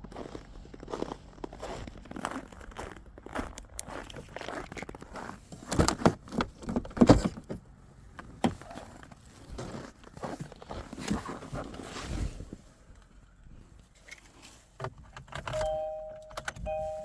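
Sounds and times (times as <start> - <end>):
footsteps crunching in snow: 0.0 - 5.5.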